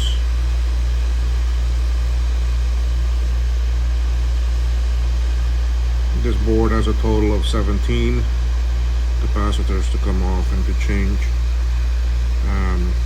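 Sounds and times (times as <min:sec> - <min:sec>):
hot air blower hissing: 0:00.0 - 0:13.0
low hum: 0:00.0 - 0:13.0.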